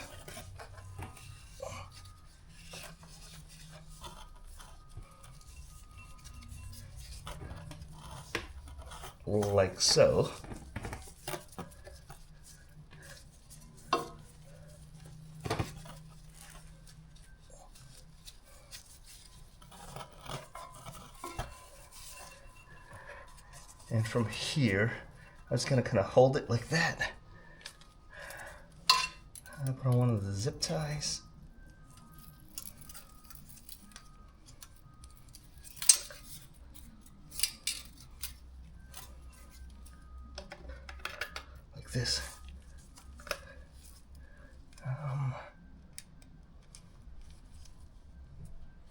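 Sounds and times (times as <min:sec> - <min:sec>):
heat wrap rubbing: 0:00.0 - 0:25.8
faint low hum: 0:00.0 - 0:48.9.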